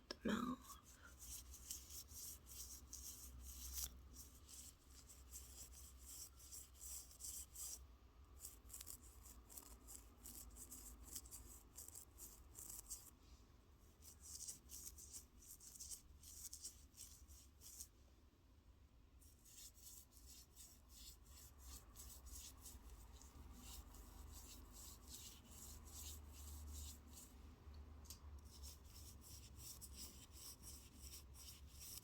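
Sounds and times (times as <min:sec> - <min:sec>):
toothbrush scrubbing: 0:08.4 - 0:13.1.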